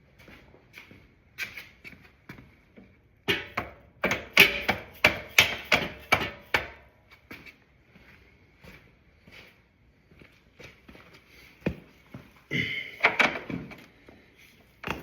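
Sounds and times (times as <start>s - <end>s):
hammer striking metal rod: 3.3s - 6.8s.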